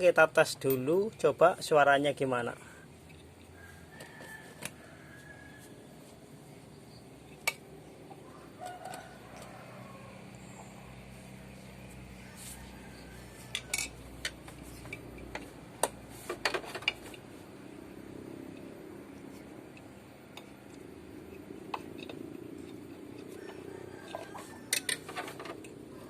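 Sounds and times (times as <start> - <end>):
metallic clicks of tools: 24.1 - 25.8.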